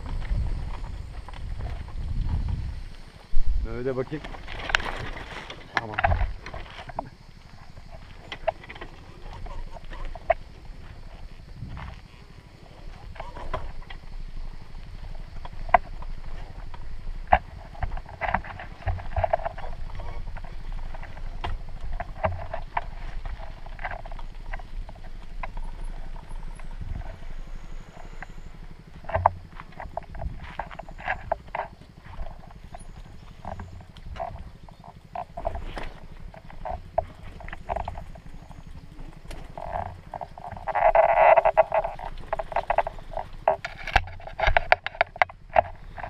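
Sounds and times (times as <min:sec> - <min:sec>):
low rumble: 0:00.0 - 0:05.4
footsteps crunching on stony path: 0:00.0 - 0:46.0
frogs croaking: 0:00.0 - 0:46.0.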